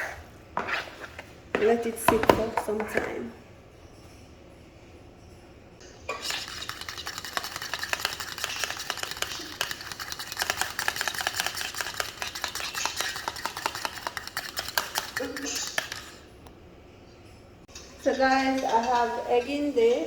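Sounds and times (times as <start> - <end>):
utensil stirring in a bowl: 0.0 - 3.0, 5.9 - 16.3.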